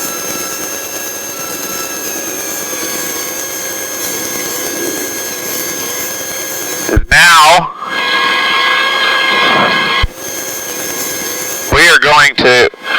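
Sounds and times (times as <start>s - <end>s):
aircraft engine idling: 0.0s - 7.0s, 9.9s - 11.8s.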